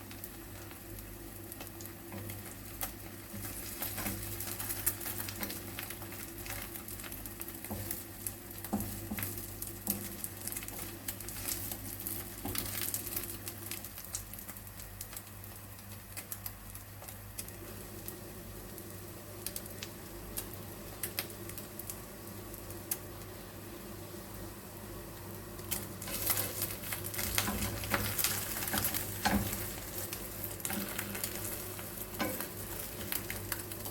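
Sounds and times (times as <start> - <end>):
egg sizzling in a frying pan: 0.0 - 33.9.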